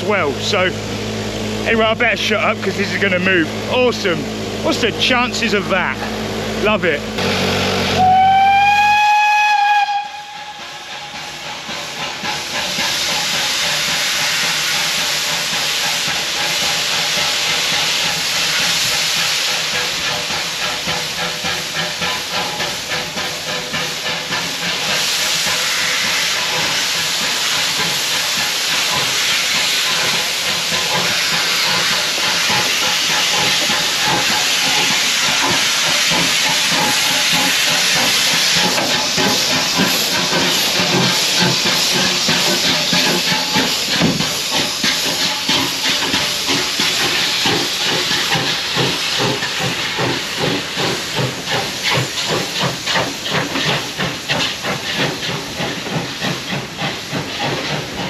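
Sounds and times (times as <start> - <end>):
loud steam hiss: 0.0 - 58.0
rhythmic locomotive exhaust beats: 0.0 - 58.0
steam locomotive whistle: 7.2 - 11.2.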